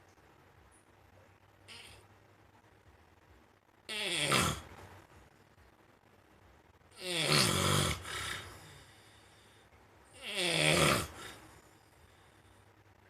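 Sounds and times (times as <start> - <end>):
hen rasping snore-like noises: 3.9 - 4.7, 7.0 - 11.6.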